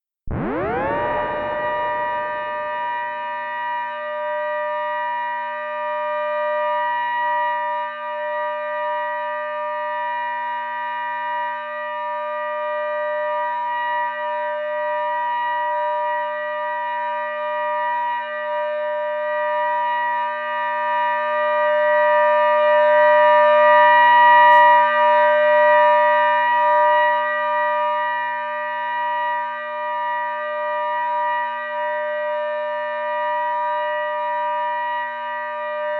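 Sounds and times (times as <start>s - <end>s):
synthesized two-tone siren: 0.2s - 6.3s.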